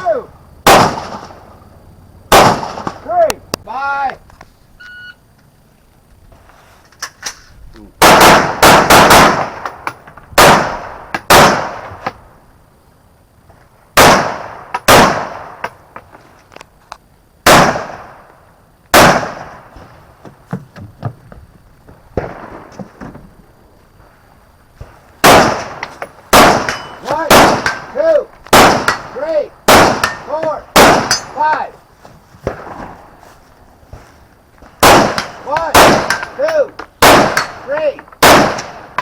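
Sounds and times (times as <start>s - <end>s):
rifle shots with echo: 0.6s - 1.4s, 2.3s - 3.0s, 8.0s - 12.0s, 14.0s - 15.7s, 17.4s - 18.2s, 18.9s - 19.7s, 25.2s - 31.4s, 34.8s - 36.4s, 37.0s - 39.0s
distant rifle shots: 0.6s - 1.5s, 2.3s - 3.1s, 8.0s - 12.2s, 14.0s - 15.8s, 17.4s - 18.2s, 18.9s - 19.8s, 25.2s - 31.4s, 34.8s - 36.4s, 37.0s - 39.0s.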